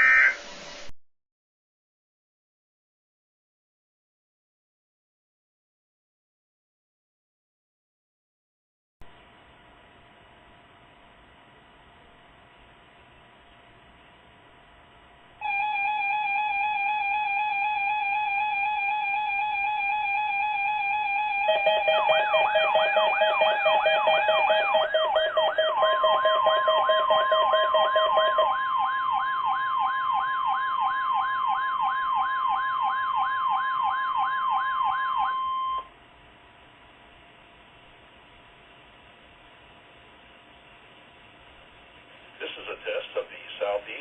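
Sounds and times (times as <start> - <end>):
steady high tone: 0.0 - 0.8, 15.4 - 36.0
siren-like sweep: 15.4 - 35.9
warbling alert tones: 15.4 - 35.9.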